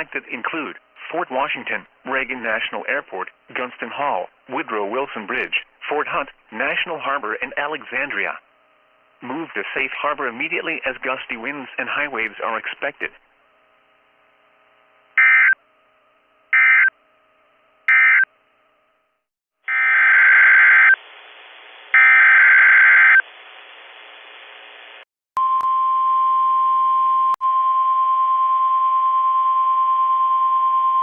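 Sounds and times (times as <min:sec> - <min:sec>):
steady warning alarm tone: 0:15.2 - 0:15.6, 0:16.5 - 0:16.9, 0:17.9 - 0:18.3, 0:19.7 - 0:21.0, 0:21.9 - 0:23.3.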